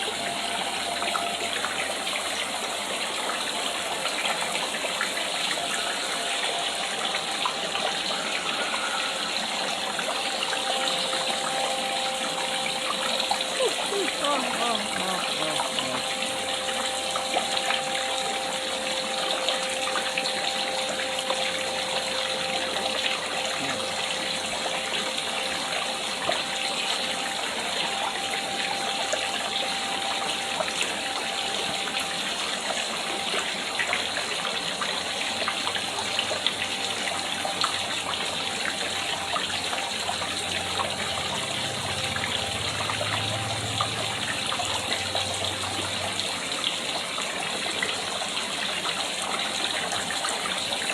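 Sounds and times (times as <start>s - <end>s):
water splashing into pond: 0.0s - 50.9s.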